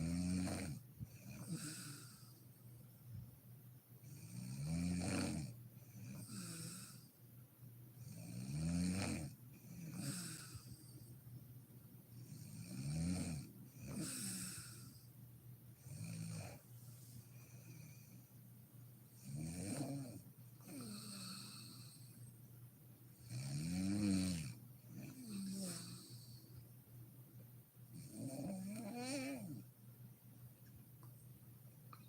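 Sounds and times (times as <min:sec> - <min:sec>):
woman snoring: 0:00.0 - 0:02.4, 0:04.1 - 0:07.1, 0:08.0 - 0:10.9, 0:12.3 - 0:15.1, 0:19.2 - 0:22.2, 0:23.2 - 0:26.4, 0:28.0 - 0:29.7.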